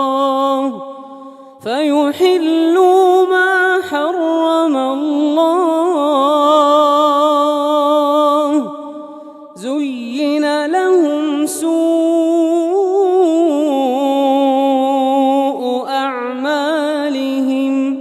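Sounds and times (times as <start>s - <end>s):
man chanting melodically: 0.0s - 8.8s
breath: 1.0s - 1.6s, 9.0s - 9.6s.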